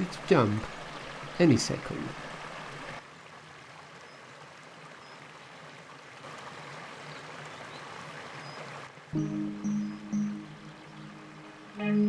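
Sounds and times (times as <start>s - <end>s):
mountain stream rushing: 0.0s - 11.8s
faint high chirps: 9.2s - 12.0s.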